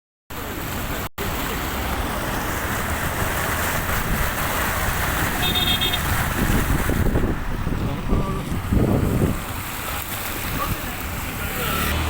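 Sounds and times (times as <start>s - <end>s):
heavy rain pouring: 0.3s - 12.0s.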